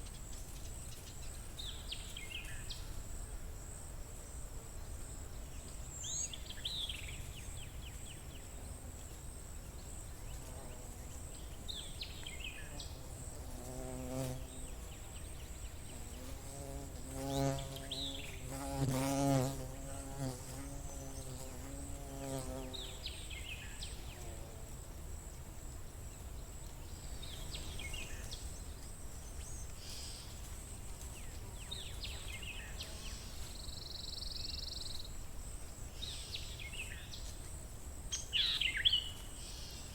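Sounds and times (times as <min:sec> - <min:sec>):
flying insect buzzing: 0:12.4 - 0:15.1, 0:15.8 - 0:24.8.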